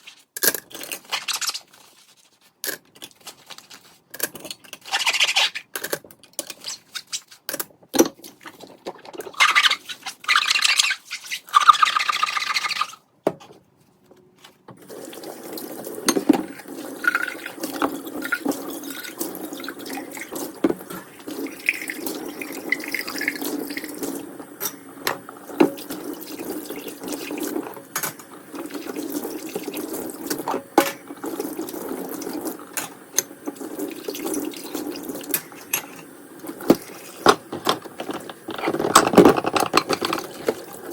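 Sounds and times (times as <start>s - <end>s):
tap water running into sink: 14.8s - 40.9s
dishes and utensils clicking: 37.2s - 40.6s.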